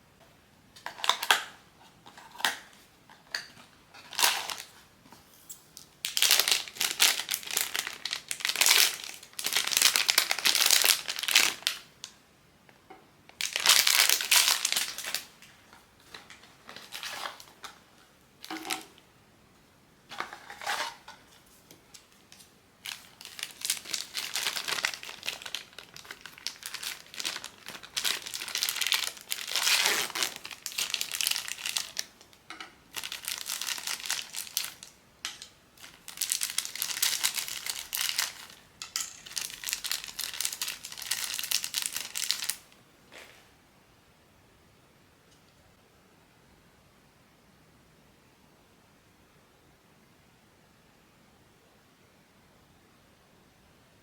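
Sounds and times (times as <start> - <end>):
plastic packaging crinkling: 3.6 - 4.8, 5.8 - 11.9, 13.3 - 15.4, 16.0 - 17.8, 22.2 - 42.7.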